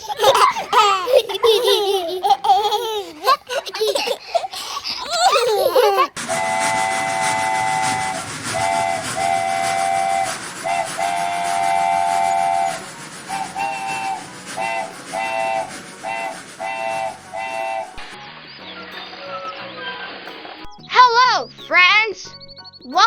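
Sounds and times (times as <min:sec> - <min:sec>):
steam hissing: 0:00.0 - 0:18.2
steam locomotive chime whistle: 0:06.2 - 0:18.2.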